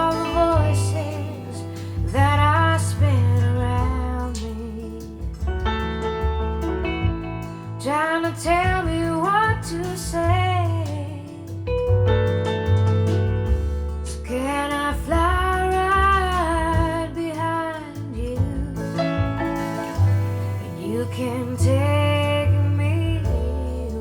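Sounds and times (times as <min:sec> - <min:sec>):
woman singing wordless phrases: 0:00.0 - 0:05.4, 0:07.8 - 0:11.7, 0:14.1 - 0:19.3, 0:20.6 - 0:24.0
steady bass line: 0:00.0 - 0:24.0.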